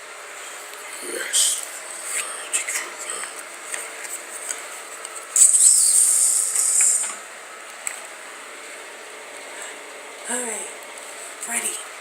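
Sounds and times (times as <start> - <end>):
loud hissing burst: 5.4 - 7.2.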